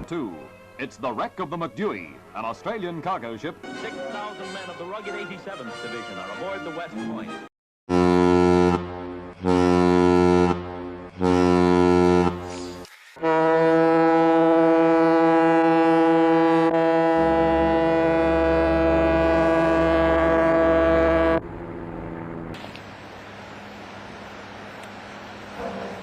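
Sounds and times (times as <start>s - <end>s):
ship's horn blasts: 3.6s - 12.6s, 13.2s - 21.4s.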